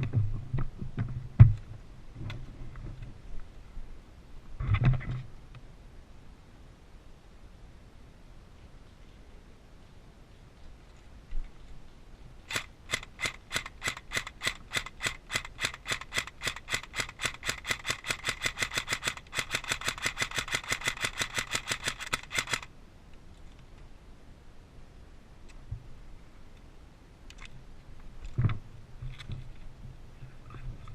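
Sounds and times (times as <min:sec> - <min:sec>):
sharp evenly spaced clicks: 0:12.5 - 0:22.7.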